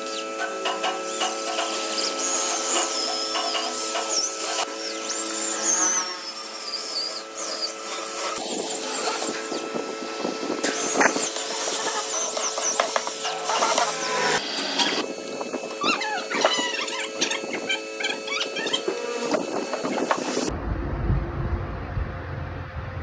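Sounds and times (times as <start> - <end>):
power tool humming: 0.0 - 20.5
high wavering whistles: 1.9 - 9.7, 10.7 - 20.5.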